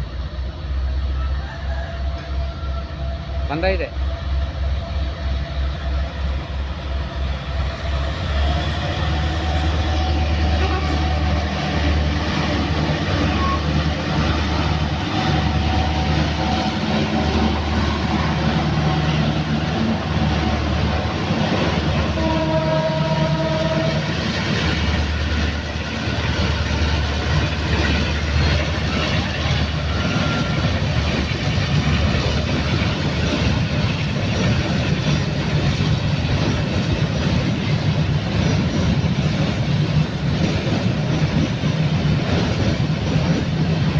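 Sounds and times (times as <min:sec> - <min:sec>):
diesel locomotive engine rumble: 0:00.0 - 0:43.9
train wagons running on rails: 0:00.0 - 0:43.9.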